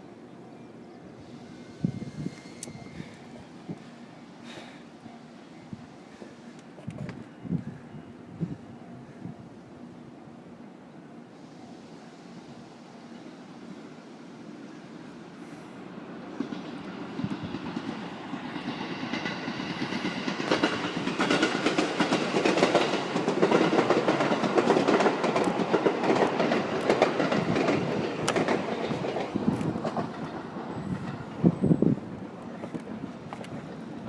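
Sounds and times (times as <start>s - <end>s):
train passing: 0.0s - 34.0s
wheels clattering on rail joints: 16.4s - 34.0s.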